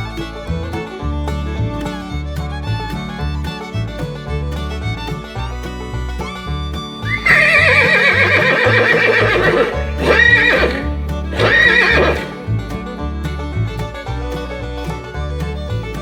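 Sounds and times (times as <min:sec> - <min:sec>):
country-style music: 0:00.0 - 0:16.0
horse neighing: 0:07.0 - 0:12.4.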